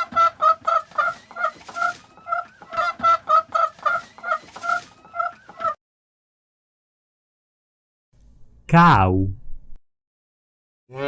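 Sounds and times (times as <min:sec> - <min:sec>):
chicken clucking: 0:00.0 - 0:05.8.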